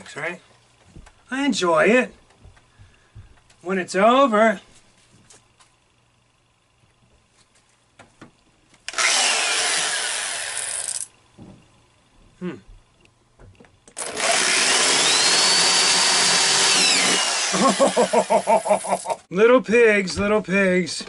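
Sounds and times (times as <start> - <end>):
electric drill whining: 8.9 - 11.1, 14.0 - 18.8.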